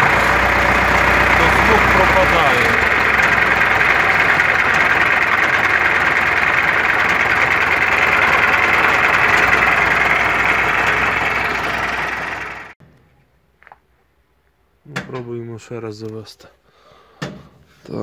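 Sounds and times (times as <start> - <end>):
tractor diesel engine idling: 0.0 - 12.8.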